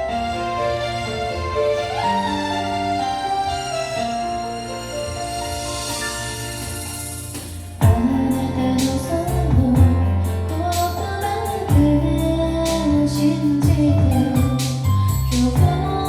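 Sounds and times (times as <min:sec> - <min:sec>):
karaoke backing track: 0:00.0 - 0:16.0
woman singing pop ballad: 0:07.8 - 0:16.0.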